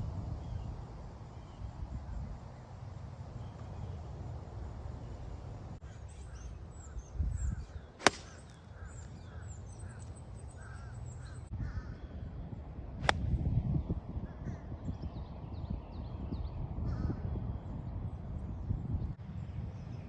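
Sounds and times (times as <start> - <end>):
small birds chirping: 3.3 - 11.5
golf club striking ball: 8.0 - 8.6.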